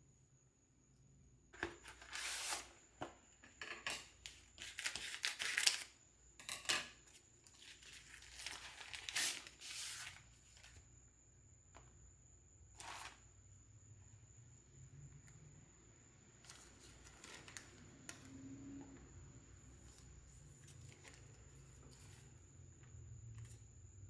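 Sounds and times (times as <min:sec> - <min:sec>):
wrapping crinkling and rustling: 0:07.5 - 0:10.8.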